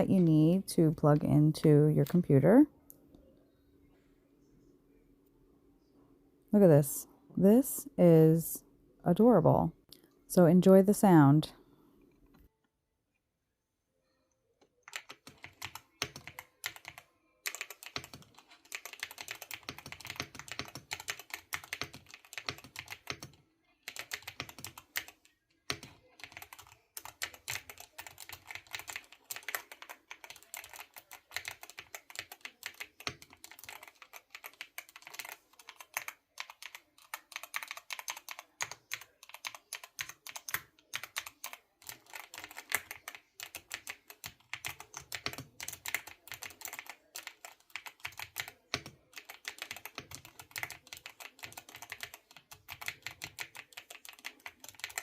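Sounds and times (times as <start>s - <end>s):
fast mechanical keyboard typing: 14.8s - 55.0s.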